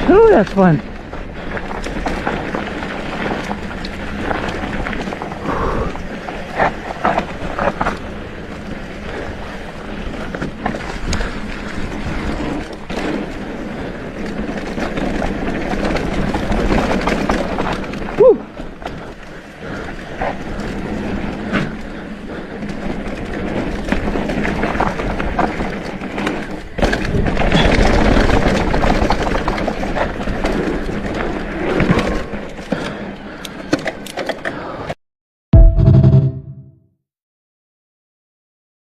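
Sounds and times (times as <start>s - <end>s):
bike tyres rolling on dirt: 0.0s - 34.9s
bike rattling and clicking: 0.0s - 35.0s
loud knock: 35.6s - 36.6s.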